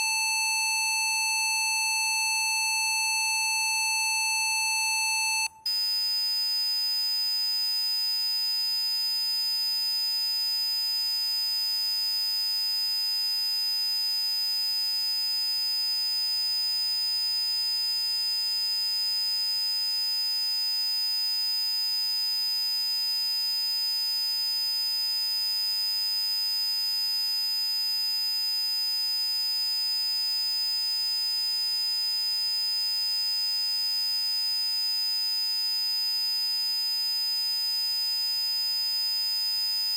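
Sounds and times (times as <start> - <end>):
high-pitched pure tone: 0.0 - 6.1
faint lower tone: 0.0 - 6.4.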